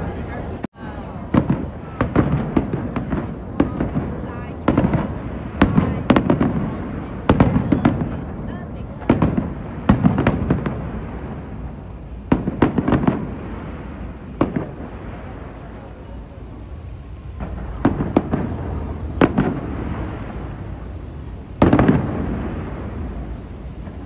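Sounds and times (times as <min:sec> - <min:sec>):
fireworks bursting with echo: 0:00.0 - 0:24.0.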